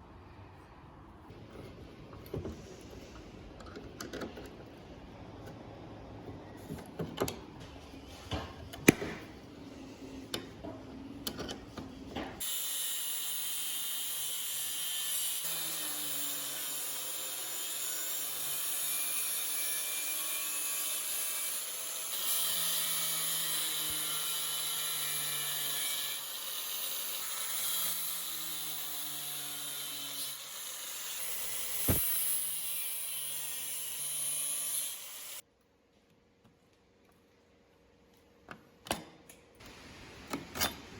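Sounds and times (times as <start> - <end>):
small power tool grinding: 12.4 - 35.4.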